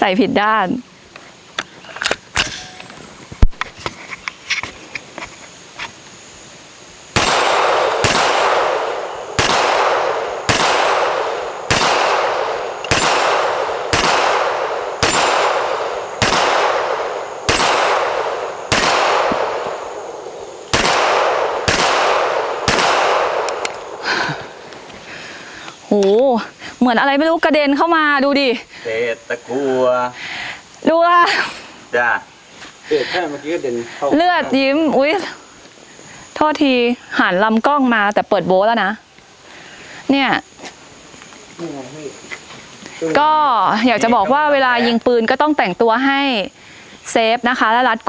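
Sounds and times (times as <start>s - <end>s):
handgun shots with echo: 7.2s - 24.1s.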